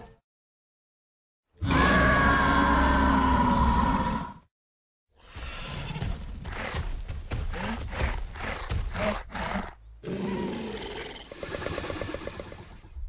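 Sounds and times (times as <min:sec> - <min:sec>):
dinosaur growling calls: 0:01.6 - 0:04.4.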